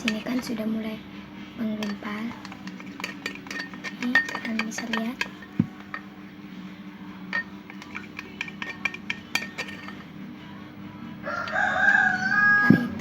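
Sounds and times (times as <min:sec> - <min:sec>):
stirrer clinking against bowl: 0:00.0 - 0:00.5, 0:01.8 - 0:06.2, 0:07.3 - 0:10.1.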